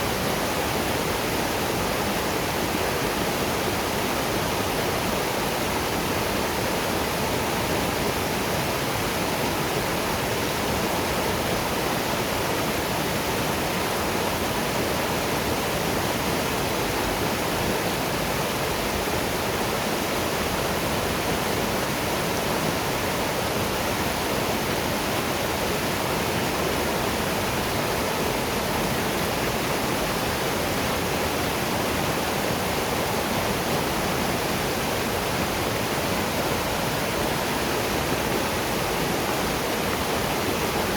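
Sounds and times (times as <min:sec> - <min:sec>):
waterfall and river rushing: 0:00.0 - 0:40.9.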